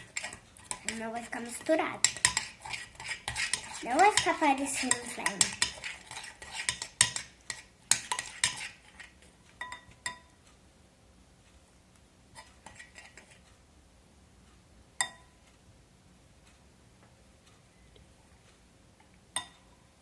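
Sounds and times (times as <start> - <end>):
utensil clinking against a bowl: 0.0 - 10.4, 15.0 - 15.4, 19.3 - 19.7.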